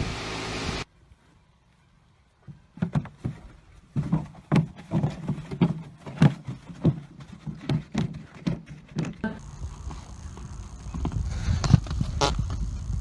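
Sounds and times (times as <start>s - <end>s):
horse hooves clip-clopping: 2.4s - 13.0s.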